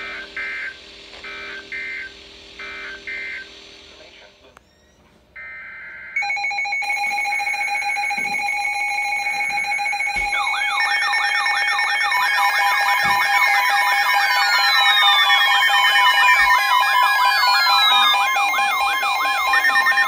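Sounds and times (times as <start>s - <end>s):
piercing electronic alert tone: 6.2s - 20.0s
rising and falling siren sweep: 7.0s - 20.0s
two-tone data screech: 7.0s - 20.0s.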